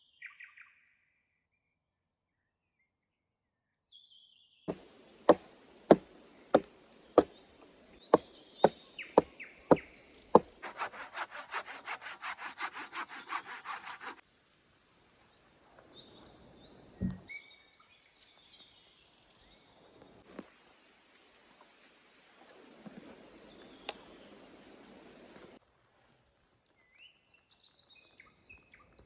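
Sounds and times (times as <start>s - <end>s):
axe chopping wood: 4.7s - 7.4s, 10.4s - 14.2s
hand saw cutting log: 4.7s - 14.2s.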